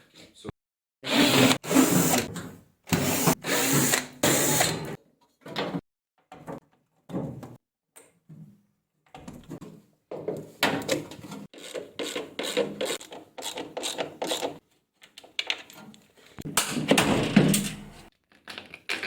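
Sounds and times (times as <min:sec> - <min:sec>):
power drill bursts: 0:01.1 - 0:02.3, 0:02.9 - 0:04.9.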